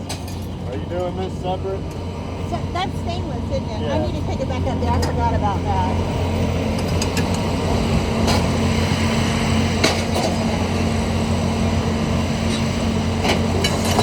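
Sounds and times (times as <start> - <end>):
heavy engine humming: 0.0 - 14.0.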